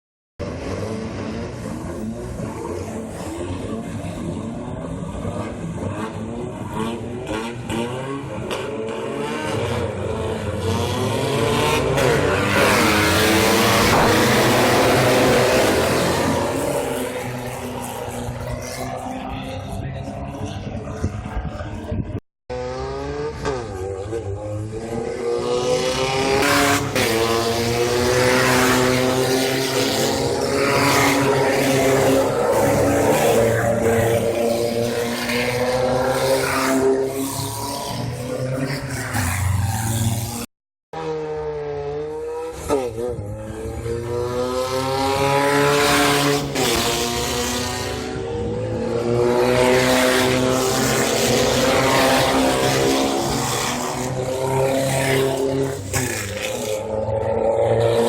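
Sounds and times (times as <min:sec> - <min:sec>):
race car engine accelerating: 0:00.4 - 0:21.1
race vehicle engine at full throttle: 0:00.4 - 0:58.0.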